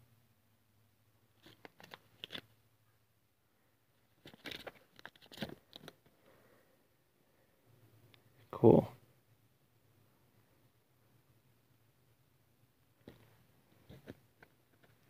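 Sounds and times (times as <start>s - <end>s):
plastic packaging crinkling: 4.2s - 6.0s.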